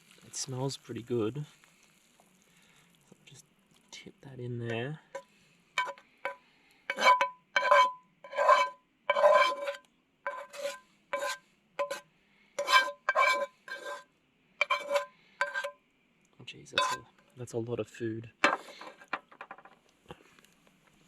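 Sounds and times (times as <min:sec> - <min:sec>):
metal utensil scraping a pan: 0:05.8 - 0:12.0, 0:12.6 - 0:15.8, 0:16.7 - 0:17.1, 0:18.4 - 0:19.2.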